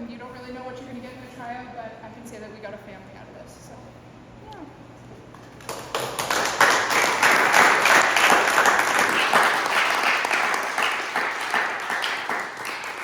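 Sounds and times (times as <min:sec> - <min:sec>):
people applauding: 0:05.4 - 0:13.0.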